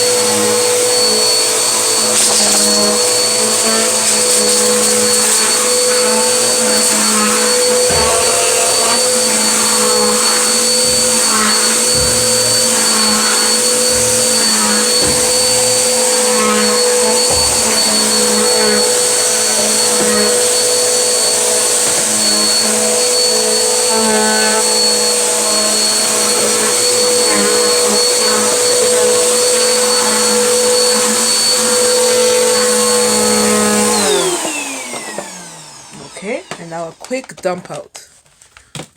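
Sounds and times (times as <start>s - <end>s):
vacuum cleaner running: 0.0s - 37.8s
low knocks: 10.7s - 16.0s.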